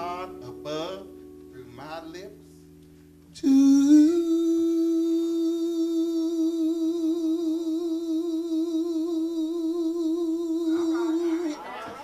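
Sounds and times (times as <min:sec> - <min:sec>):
person singing long note: 0:03.3 - 0:11.7.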